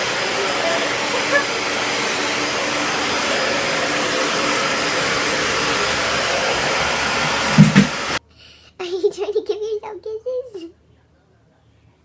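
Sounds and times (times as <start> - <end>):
loud rushing noise: 0.0 - 8.2.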